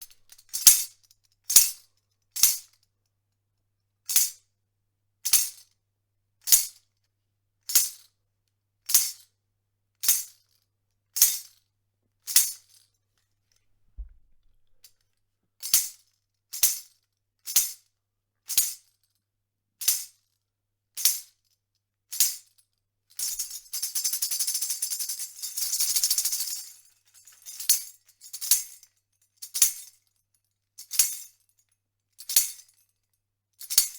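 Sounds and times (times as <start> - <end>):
tambourine jingling roll: 23.2 - 28.8.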